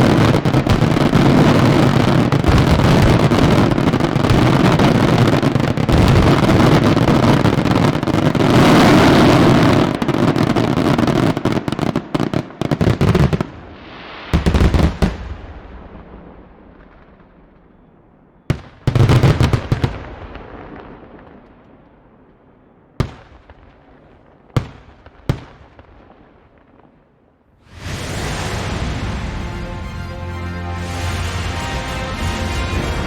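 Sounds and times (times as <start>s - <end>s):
fireworks bangs: 0.0s - 22.3s, 22.9s - 33.0s.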